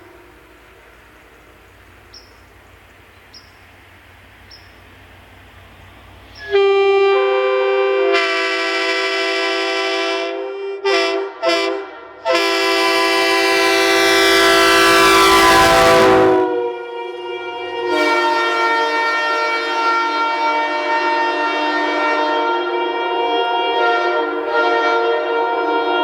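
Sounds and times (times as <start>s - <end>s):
train air horn blasts: 0.0s - 0.9s, 6.3s - 26.0s.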